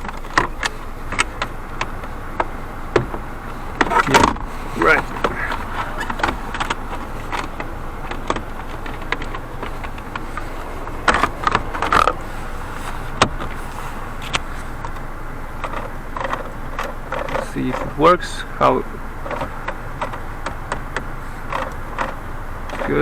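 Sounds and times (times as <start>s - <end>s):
plastic panel clicks and knocks: 0.0s - 4.5s, 5.1s - 10.4s
steady background noise: 0.0s - 23.0s.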